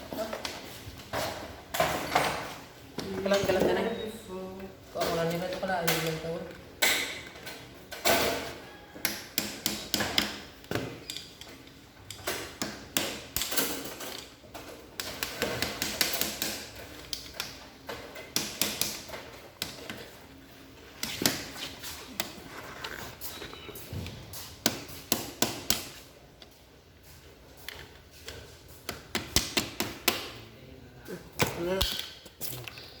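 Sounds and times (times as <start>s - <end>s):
hard objects tapping and knocking: 5.0s - 20.3s, 21.0s - 26.0s, 27.7s - 30.5s.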